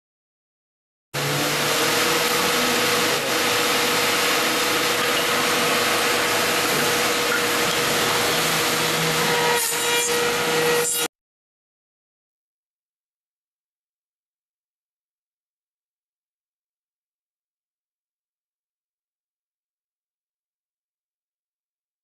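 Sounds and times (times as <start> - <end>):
machine cutting wood: 1.2 - 11.1
motor whine: 1.2 - 11.1.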